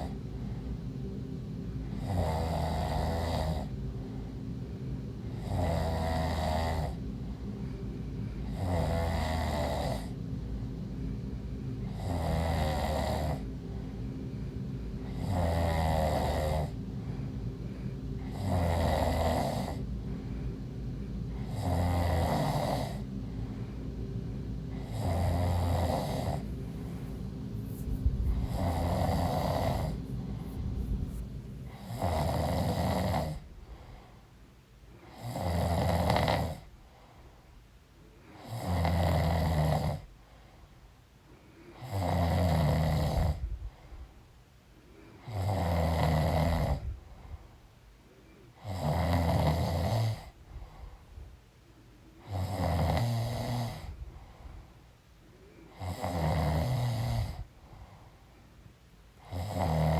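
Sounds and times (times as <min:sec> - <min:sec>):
woman snoring: 0:00.0 - 0:00.6, 0:01.8 - 0:04.2, 0:05.3 - 0:07.4, 0:08.4 - 0:10.2, 0:11.8 - 0:13.5, 0:15.0 - 0:16.8, 0:18.2 - 0:19.9, 0:21.3 - 0:23.1, 0:24.7 - 0:34.0, 0:35.0 - 0:36.7, 0:38.4 - 0:40.1, 0:41.8 - 0:43.5, 0:45.2 - 0:47.0, 0:48.6 - 0:50.4, 0:52.2 - 0:54.0, 0:55.7 - 0:57.5, 0:59.2 - 0:59.9.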